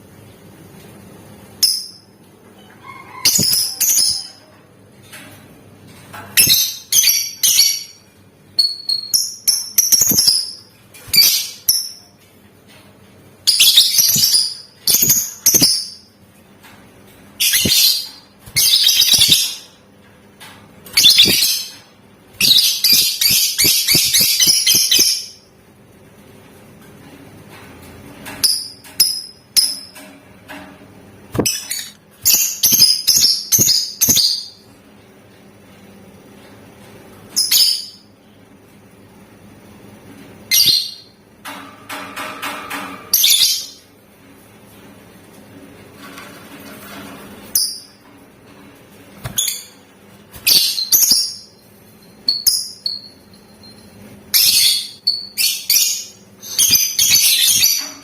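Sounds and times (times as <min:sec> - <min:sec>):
lovebird chirping and chattering: 0:17.4 - 0:19.7, 0:21.0 - 0:21.8, 0:22.4 - 0:25.4, 0:54.3 - 0:57.9.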